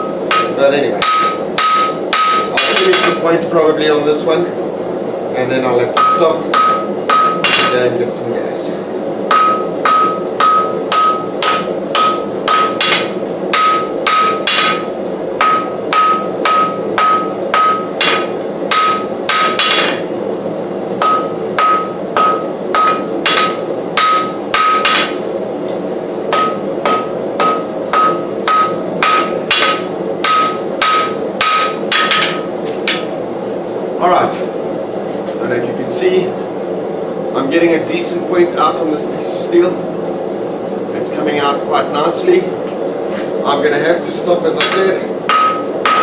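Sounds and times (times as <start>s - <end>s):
hammer striking steel on anvil: 0.0s - 3.2s, 5.9s - 7.8s, 9.3s - 20.1s, 21.0s - 25.3s, 26.3s - 33.1s, 44.6s - 46.0s.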